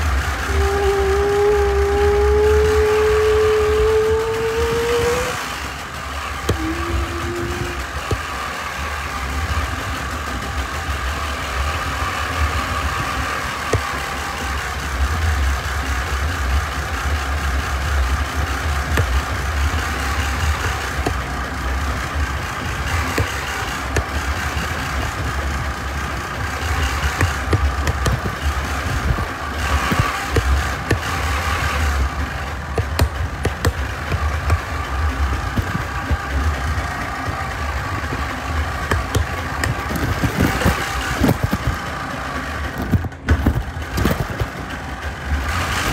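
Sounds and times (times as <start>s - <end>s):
knocks and rattles: 0.0s - 45.9s
tractor engine running: 0.0s - 45.9s
sharp knocks: 32.8s - 34.7s, 38.0s - 41.8s.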